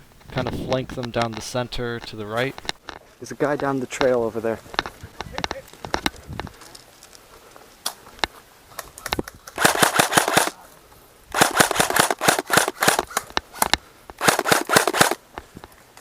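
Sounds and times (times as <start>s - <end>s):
airsoft guns firing bursts: 9.6s - 10.6s, 11.3s - 13.2s, 14.2s - 15.2s
airsoft single shots: 9.6s - 10.6s, 11.3s - 13.1s, 14.2s - 15.2s.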